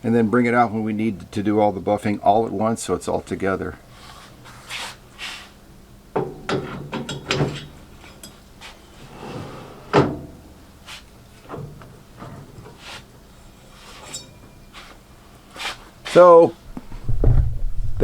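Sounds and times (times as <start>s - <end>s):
knocks and clunks of hard objects: 6.2s - 7.8s.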